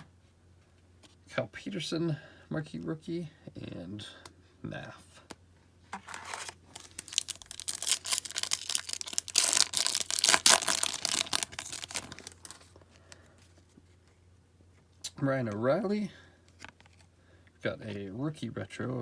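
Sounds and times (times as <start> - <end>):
wrapper tearing and crinkling: 6.0 - 12.7.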